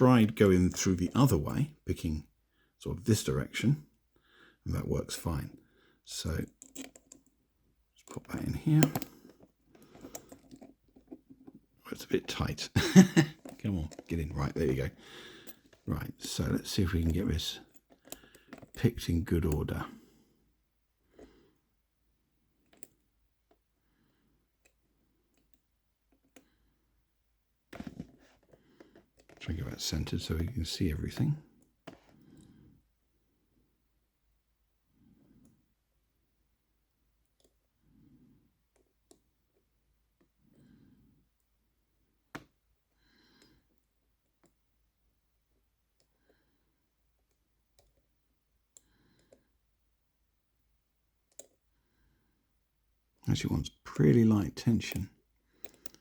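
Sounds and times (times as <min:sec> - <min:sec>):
lock picking clicks: 0:06.5 - 0:07.3.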